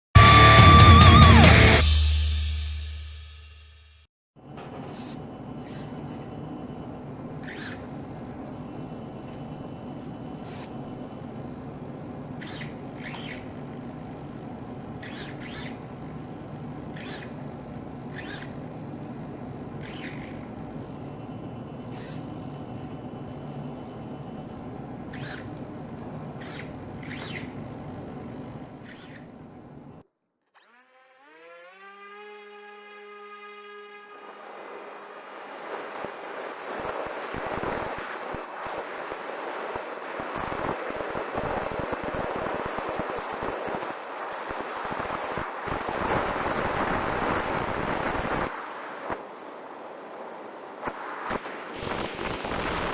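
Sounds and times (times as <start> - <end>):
short high buzzes: 4.4 - 30.0
electric motor whirring: 4.5 - 30.0.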